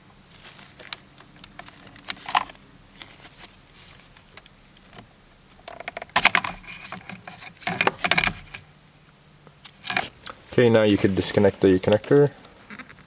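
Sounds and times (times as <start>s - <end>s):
plastic clicking and rattling: 4.3s - 8.6s.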